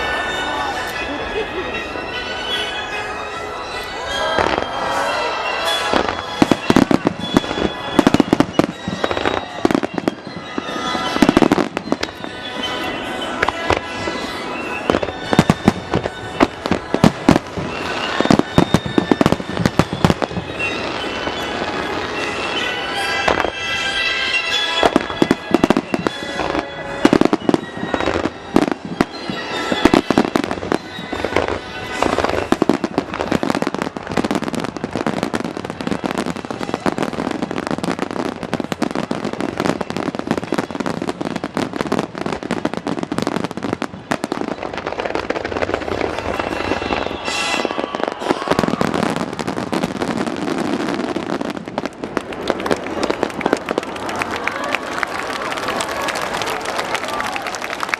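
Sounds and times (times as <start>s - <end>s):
music playing: 0.0s - 36.9s
fireworks bursting and crackling: 3.6s - 57.9s.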